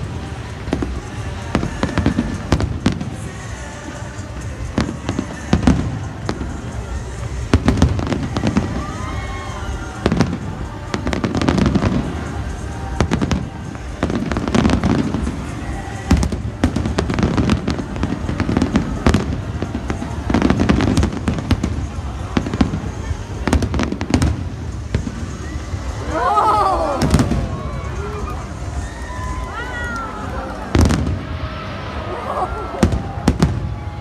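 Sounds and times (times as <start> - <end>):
firework bangs and crackles: 0.0 - 34.0
deep firework booms: 10.0 - 26.0, 27.0 - 27.9, 30.7 - 32.0, 32.8 - 34.0.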